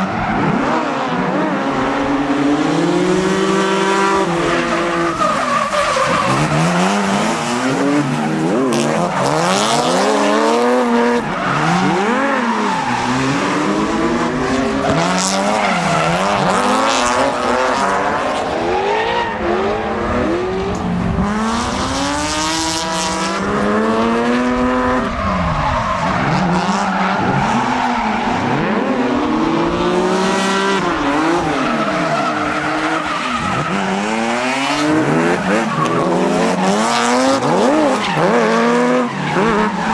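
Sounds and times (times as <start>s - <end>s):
car engines revving hard: 0.0s - 39.9s
tyres squealing: 3.3s - 18.2s.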